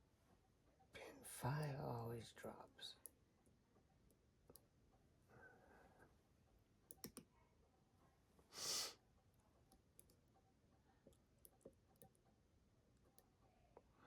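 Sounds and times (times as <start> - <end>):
loud hiss of breath: 8.5 - 9.0.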